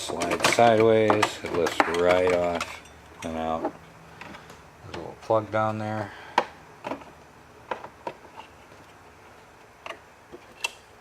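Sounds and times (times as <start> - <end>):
hands clicking plastic fan parts: 0.0 - 2.7.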